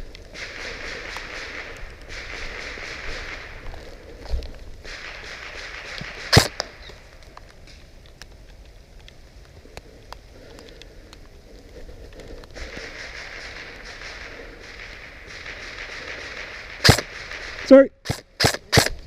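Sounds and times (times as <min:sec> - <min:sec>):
faint ticks and clicks: 0:00.0 - 0:19.0
rustling hiss: 0:00.0 - 0:19.0
loud sharp snap: 0:05.0 - 0:06.7, 0:13.3 - 0:19.0.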